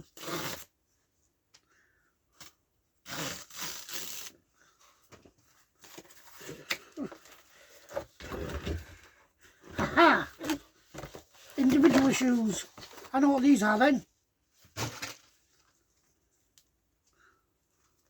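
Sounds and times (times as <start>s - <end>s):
packaging rustling: 10.4s - 13.9s.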